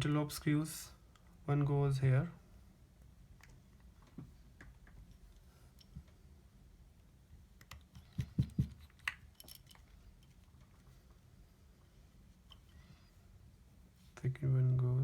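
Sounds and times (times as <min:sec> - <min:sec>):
quick knocks: 0:08.1 - 0:08.9.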